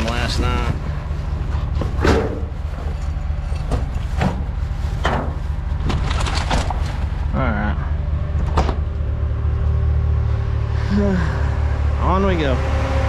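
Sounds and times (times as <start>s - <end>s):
rustling: 0.0s - 7.3s
vehicle engine humming: 0.0s - 13.0s.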